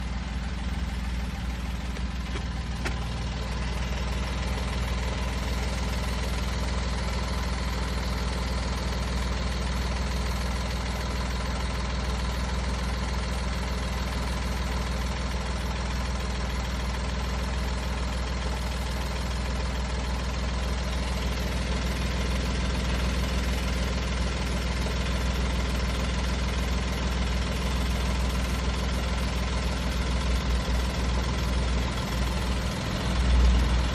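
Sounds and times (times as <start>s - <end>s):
van engine idling: 0.0s - 33.9s.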